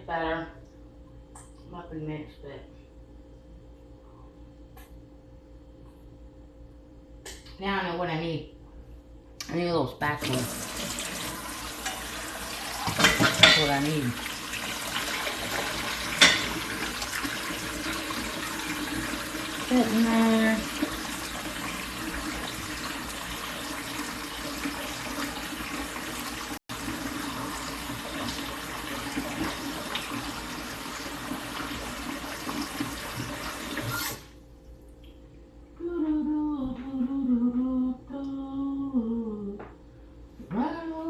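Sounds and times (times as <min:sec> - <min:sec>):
kitchen tap running into sink: 0:10.2 - 0:34.2
woman humming a tune: 0:35.8 - 0:39.6.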